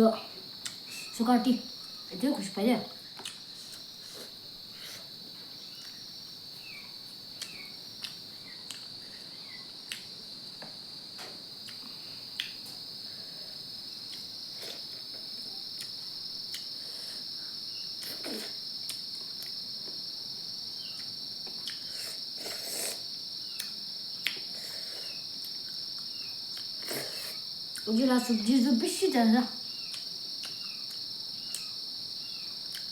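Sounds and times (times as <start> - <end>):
insect chorus: 0.0 - 32.9
eating clicks and smacks: 3.2 - 3.8, 7.4 - 8.9, 9.9 - 10.1, 11.6 - 12.6, 15.7 - 16.7, 18.0 - 19.6, 20.9 - 21.9, 23.5 - 26.8, 29.8 - 31.8, 32.6 - 32.9.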